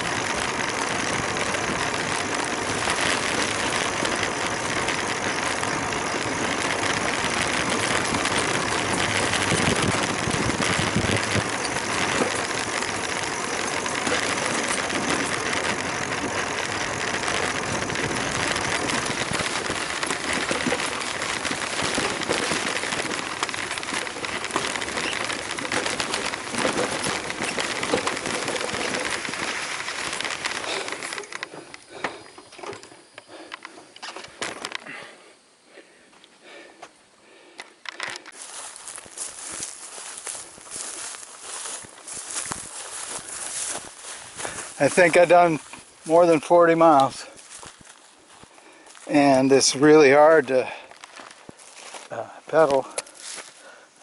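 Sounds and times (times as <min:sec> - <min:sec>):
scattered clicks: 0:00.0 - 0:34.8
bicycle rolling on sandy dirt road: 0:00.0 - 0:54.0.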